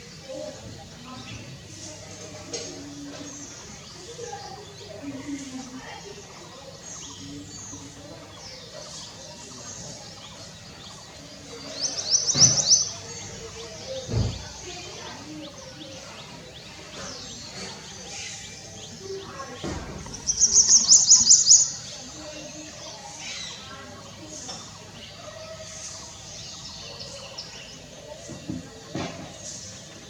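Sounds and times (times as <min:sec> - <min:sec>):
birds chirping: 0:00.0 - 0:30.0
bird trilling: 0:20.0 - 0:23.7.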